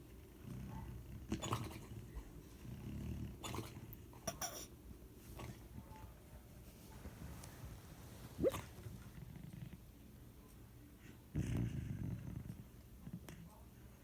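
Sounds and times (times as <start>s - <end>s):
puppy snoring: 0.4s - 4.6s, 11.3s - 13.4s.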